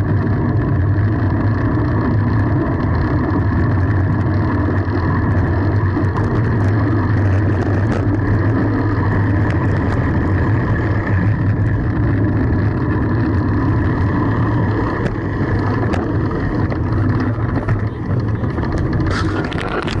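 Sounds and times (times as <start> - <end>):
road rumble: 0.0 - 20.0
wind on microphone: 0.0 - 20.0.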